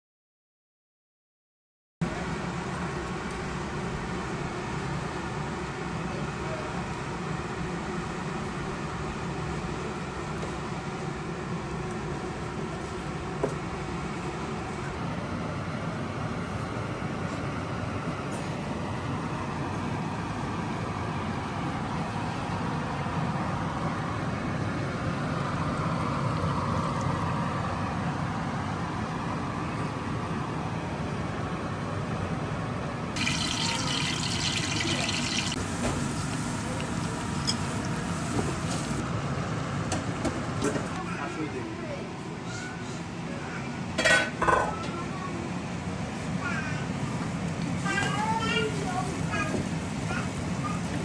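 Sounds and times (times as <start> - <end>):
water pouring and splashing: 33.2 - 39.0.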